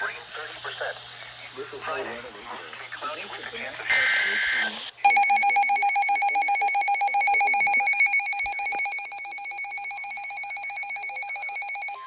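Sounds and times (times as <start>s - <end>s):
two-tone emergency alert alarm: 5.0s - 12.0s.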